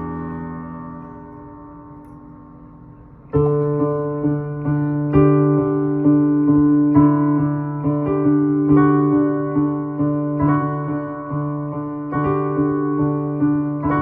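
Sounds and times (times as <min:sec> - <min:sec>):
keyboard chords: 0:00.0 - 0:14.0.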